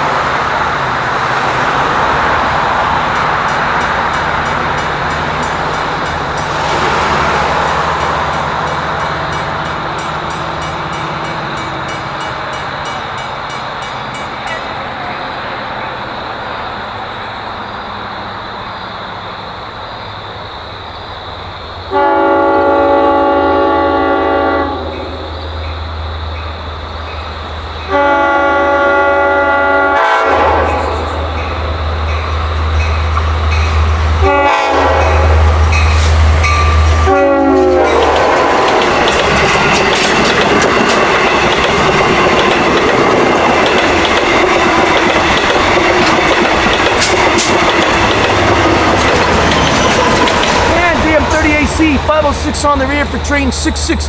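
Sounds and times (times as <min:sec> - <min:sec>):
train wheels clickety-clack: 0:01.3 - 0:16.0, 0:22.3 - 0:54.0
locomotive air horn blasts: 0:21.9 - 0:25.3, 0:27.9 - 0:31.3, 0:34.2 - 0:35.5, 0:36.5 - 0:38.7
low engine rumble: 0:47.9 - 0:54.0.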